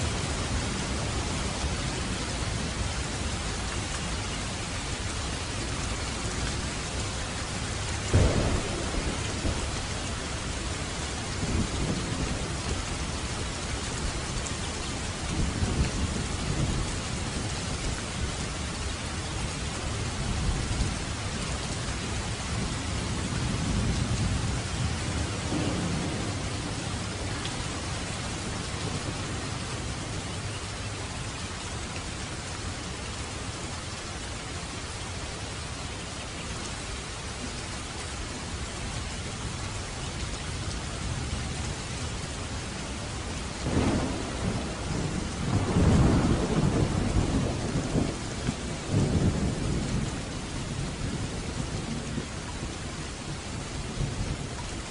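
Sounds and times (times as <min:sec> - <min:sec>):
heavy rain: 0:00.0 - 0:54.9
thunder rumbling: 0:08.0 - 0:13.8, 0:22.0 - 0:30.3, 0:43.5 - 0:52.7.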